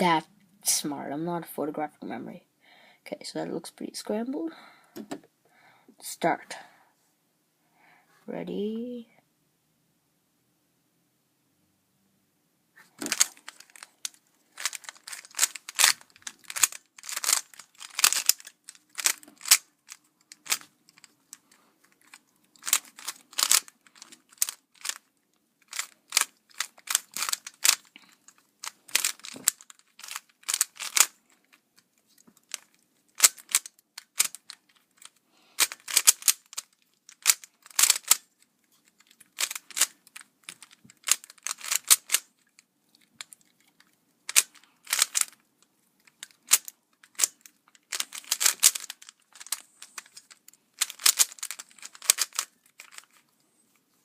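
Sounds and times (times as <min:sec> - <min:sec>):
puzzle cube clicking: 0:13.0 - 0:45.4, 0:46.0 - 0:53.2.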